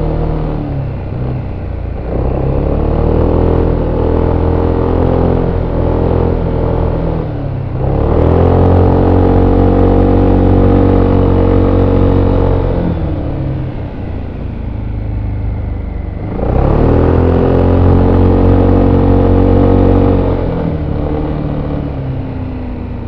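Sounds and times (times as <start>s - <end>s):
scooter engine revving: 16.1s - 23.0s.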